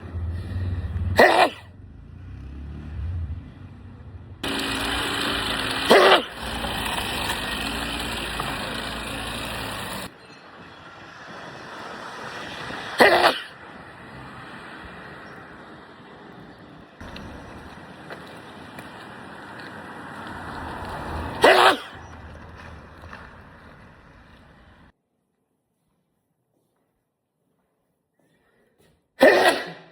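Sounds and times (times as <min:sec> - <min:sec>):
person sneezing: 0:01.2 - 0:01.7, 0:05.9 - 0:06.3, 0:13.0 - 0:13.6, 0:21.4 - 0:22.0, 0:29.2 - 0:29.9.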